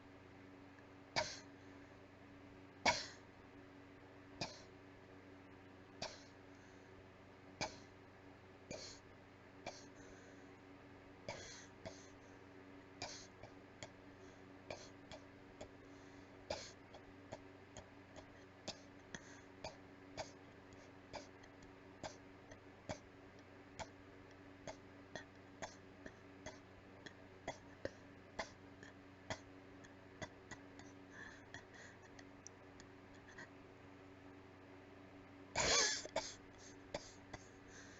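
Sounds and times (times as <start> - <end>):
faint steady hum: 0.0 - 37.9
person coughing weakly: 1.2 - 1.5, 2.9 - 3.2, 35.6 - 37.6.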